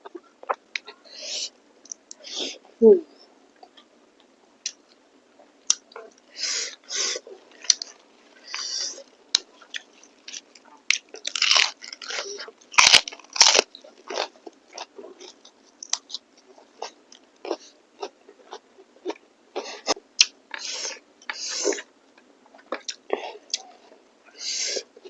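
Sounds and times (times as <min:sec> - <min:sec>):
crunchy bites: 0:07.6 - 0:14.9
chewing with wet mouth clicks: 0:09.4 - 0:16.2.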